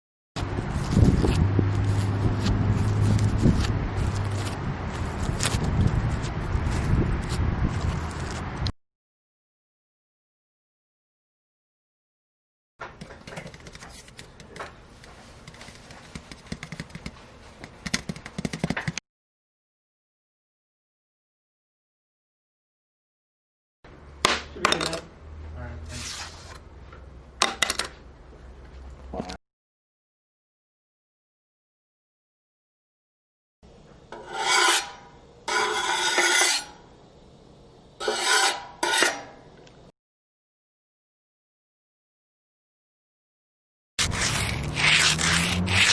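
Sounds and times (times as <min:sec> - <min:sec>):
abrasive rasping scrapes: 0:34.2 - 0:36.8, 0:38.0 - 0:39.3, 0:44.0 - 0:45.9.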